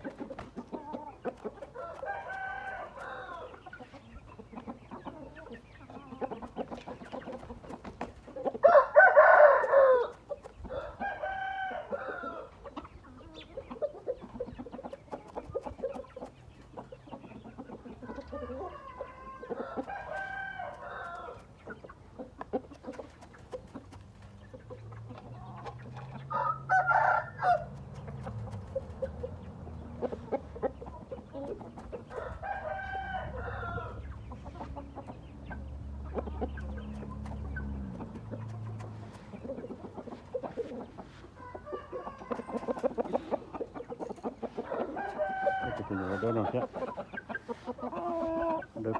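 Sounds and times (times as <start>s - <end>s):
roosters crowing: 0.0s - 3.8s, 5.0s - 12.8s, 16.9s - 21.8s, 23.6s - 48.9s.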